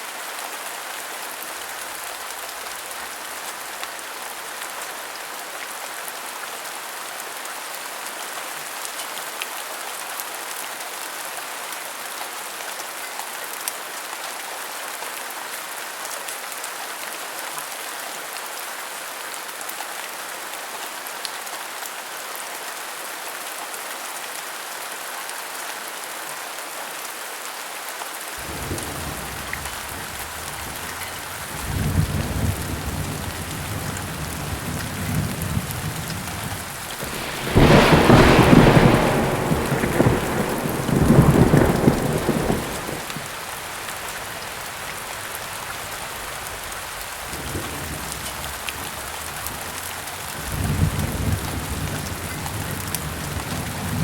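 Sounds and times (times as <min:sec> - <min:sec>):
steady rain: 0:00.0 - 0:54.0
low rumble of thunder: 0:28.4 - 0:43.4, 0:46.1 - 0:54.0.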